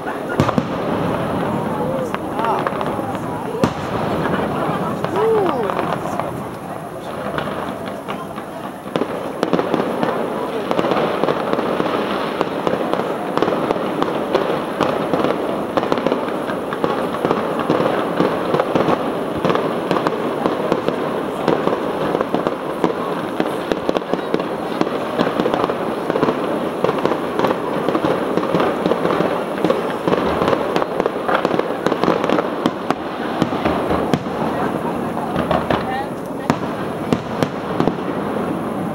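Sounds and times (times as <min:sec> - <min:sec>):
fireworks bangs and crackles: 0:00.0 - 0:38.9.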